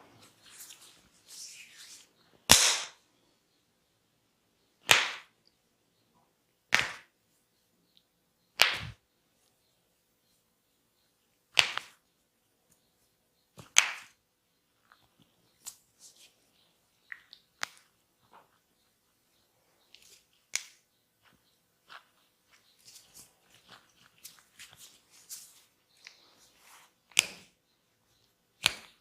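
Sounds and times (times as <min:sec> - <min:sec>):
hands slapping bare skin: 0:02.5 - 0:03.0, 0:04.8 - 0:05.3, 0:06.7 - 0:07.2, 0:08.6 - 0:09.0, 0:11.5 - 0:12.0, 0:13.6 - 0:14.2, 0:17.1 - 0:17.9, 0:19.9 - 0:20.9, 0:27.1 - 0:27.6, 0:28.6 - 0:29.0.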